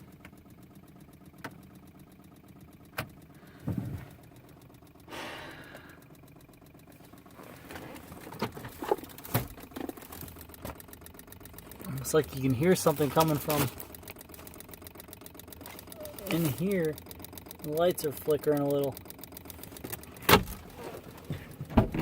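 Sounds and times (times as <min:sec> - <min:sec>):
rapid faint clicking: 0:06.0 - 0:21.7.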